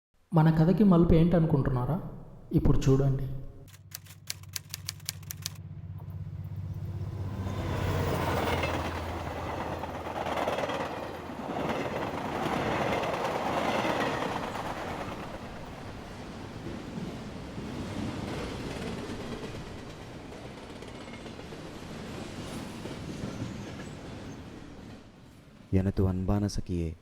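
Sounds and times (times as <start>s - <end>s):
rapid sharp clicks: 3.7s - 5.6s
train rumbling past: 5.1s - 25.8s.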